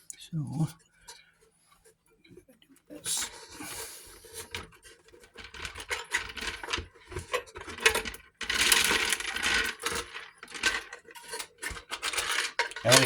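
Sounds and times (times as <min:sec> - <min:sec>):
metal parts and chain rattling: 0:04.2 - 0:13.0.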